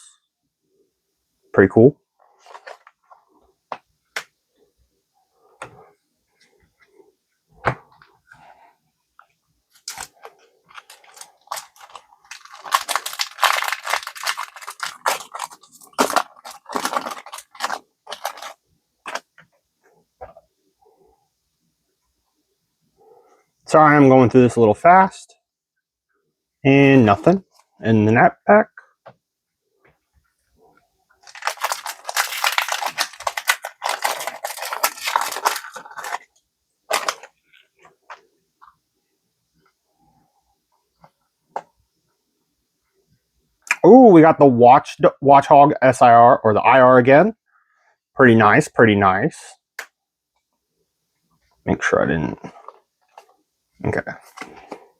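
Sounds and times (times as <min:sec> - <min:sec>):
foil wrapper crinkling and tearing: 0:09.7 - 0:19.3, 0:31.2 - 0:38.2.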